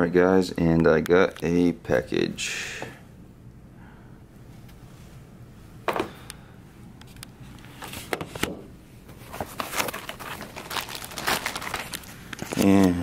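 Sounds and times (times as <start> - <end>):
cardboard clicks and rustles: 7.8 - 12.9.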